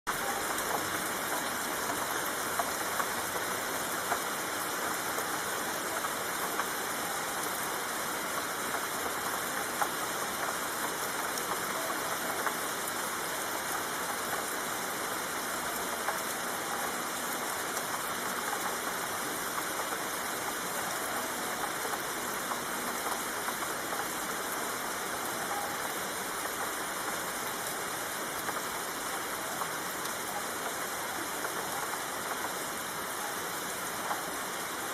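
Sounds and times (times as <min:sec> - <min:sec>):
steady rain hiss: 0:00.1 - 0:34.9.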